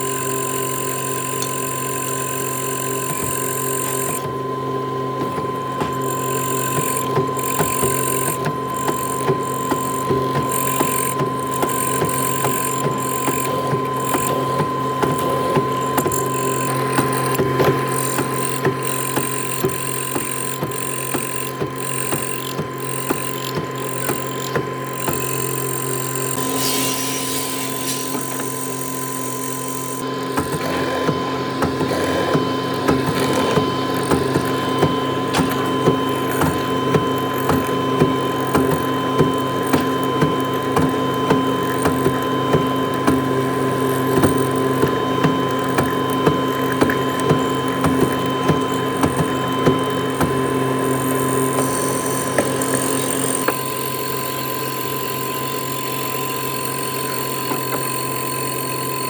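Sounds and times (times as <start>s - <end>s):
machine humming: 0.0s - 59.0s
irregular clicks and ticks: 5.2s - 26.4s.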